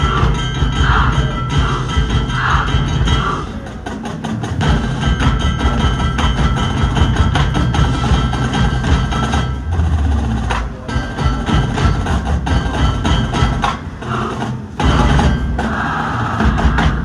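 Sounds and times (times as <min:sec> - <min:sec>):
mallet percussion ringing: 0:00.0 - 0:03.6, 0:04.6 - 0:14.0
marching band playing: 0:00.0 - 0:17.0
rapid percussion strikes: 0:00.0 - 0:17.0.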